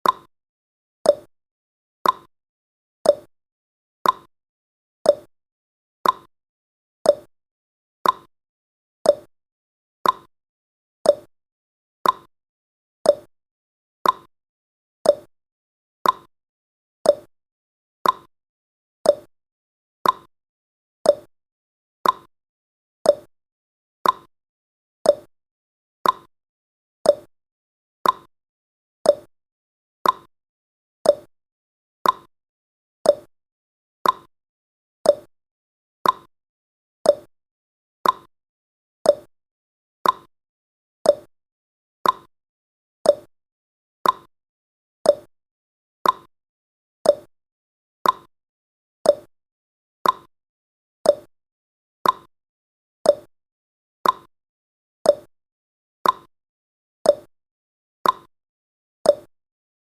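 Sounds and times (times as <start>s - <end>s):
timer ticking: 0.0s - 0.3s, 1.1s - 1.3s, 2.0s - 2.3s, 3.1s - 3.3s, 4.0s - 4.3s, 5.1s - 5.3s, 6.0s - 6.3s, 7.1s - 7.3s, 8.0s - 8.3s, 9.1s - 9.3s, 10.0s - 10.3s, 11.1s - 11.3s, 12.0s - 12.3s, 13.1s - 13.3s, 14.0s - 14.3s, 15.1s - 15.3s, 16.0s - 16.3s, 17.1s - 17.3s, 18.0s - 18.3s, 19.1s - 19.3s, 20.0s - 20.3s, 21.1s - 21.3s, 22.0s - 22.3s, 23.1s - 23.3s, 24.0s - 24.3s, 25.1s - 25.3s, 26.0s - 26.3s, 27.1s - 27.3s, 28.0s - 28.3s, 29.1s - 29.3s, 30.0s - 30.3s, 31.0s - 31.3s, 32.0s - 32.3s, 33.1s - 33.3s, 34.0s - 34.3s, 35.1s - 35.3s, 36.0s - 36.3s, 37.1s - 37.3s, 38.0s - 38.3s, 39.1s - 39.3s, 40.0s - 40.3s, 41.1s - 41.3s, 42.0s - 42.3s, 43.1s - 43.3s, 44.0s - 44.3s, 45.1s - 45.3s, 46.0s - 46.3s, 47.0s - 47.3s, 48.0s - 48.3s, 49.1s - 49.3s, 50.0s - 50.3s, 51.1s - 51.3s, 52.0s - 52.3s, 53.1s - 53.3s, 54.0s - 54.3s, 55.1s - 55.3s, 56.0s - 56.3s, 57.1s - 57.3s, 58.0s - 58.3s, 59.1s - 59.3s.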